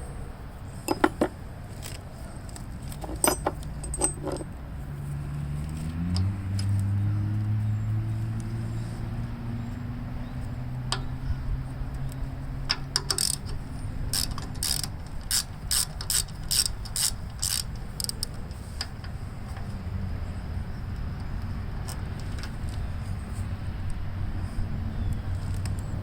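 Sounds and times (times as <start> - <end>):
ratchet wrench clicking: 12.0 - 19.7.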